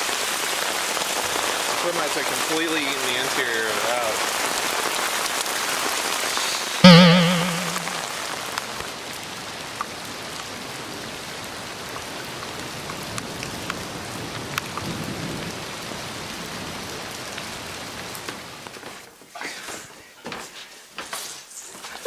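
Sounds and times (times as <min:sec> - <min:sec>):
steady rain: 0:00.0 - 0:22.0.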